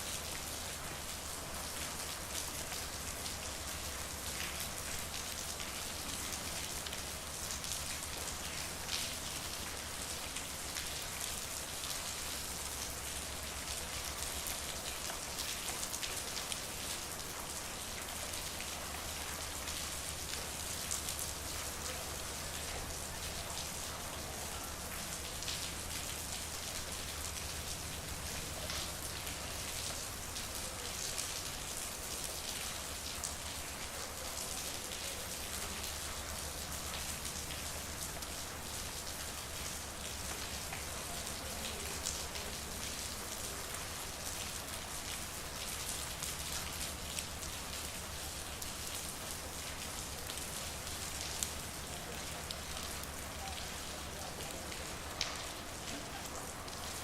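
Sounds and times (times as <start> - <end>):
rain falling: 0.0 - 57.0
sharp raindrops landing: 34.5 - 57.0.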